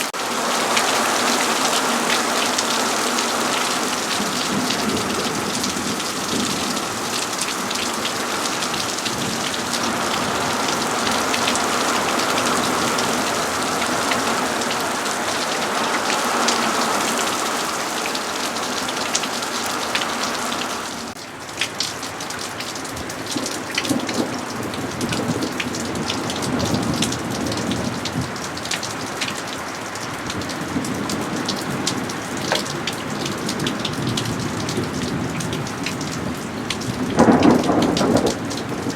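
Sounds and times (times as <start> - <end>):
raindrops ticking: 0.0 - 38.9
steady rain falling: 0.0 - 38.9.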